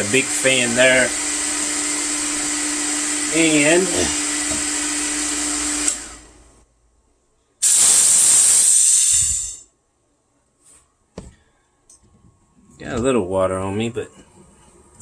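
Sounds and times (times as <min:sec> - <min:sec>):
air compressor humming: 0:00.0 - 0:06.5, 0:07.6 - 0:09.6
loud hissing air: 0:07.6 - 0:09.6.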